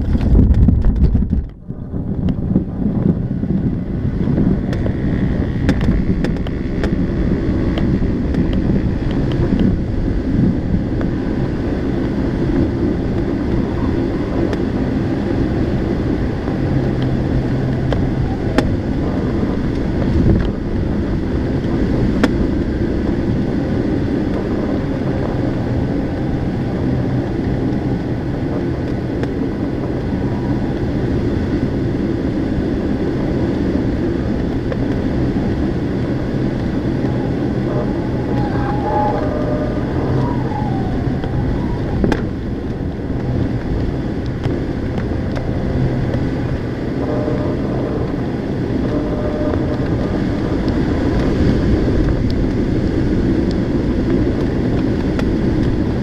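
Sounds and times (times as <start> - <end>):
low engine drone: 0.0 - 56.0
steady airflow noise: 0.0 - 56.0
faint wavering tone: 36.8 - 42.4, 46.9 - 50.4.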